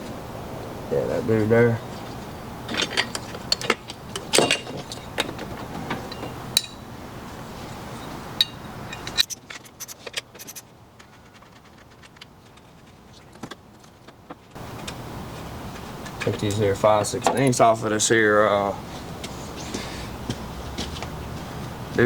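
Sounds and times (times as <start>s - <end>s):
metal tools clinking: 2.7s - 6.8s, 8.4s - 14.2s.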